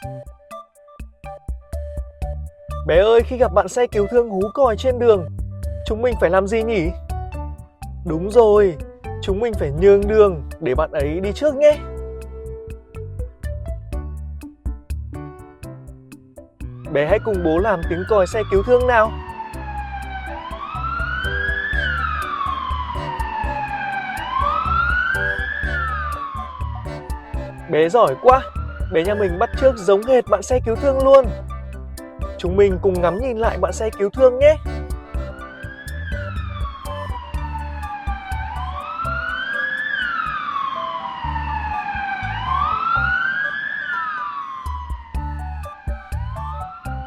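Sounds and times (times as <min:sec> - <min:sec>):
background music with beat: 0:00.0 - 0:40.4, 0:44.7 - 0:47.0
ambulance siren wailing: 0:17.0 - 0:31.4, 0:33.1 - 0:47.0.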